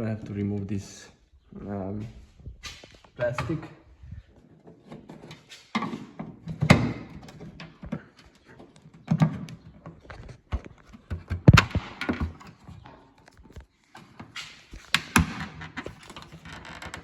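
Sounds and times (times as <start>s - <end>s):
plastic panel thunking and scraping: 4.8s - 13.0s.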